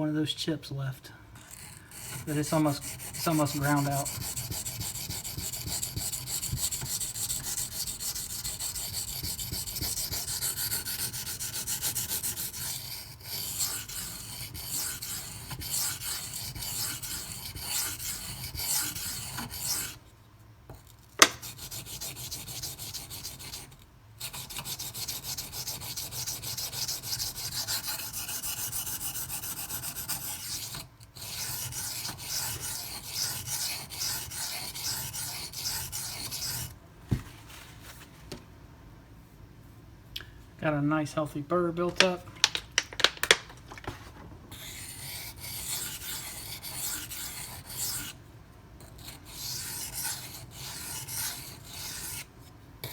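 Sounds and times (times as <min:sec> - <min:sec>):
knife rasping on whetstone: 0:01.5 - 0:20.0, 0:21.2 - 0:36.7, 0:44.6 - 0:48.2, 0:48.9 - 0:52.9.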